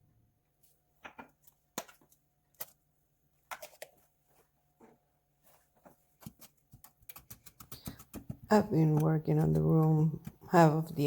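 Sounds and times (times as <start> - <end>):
objects knocking and clicking: 6.2 - 10.6.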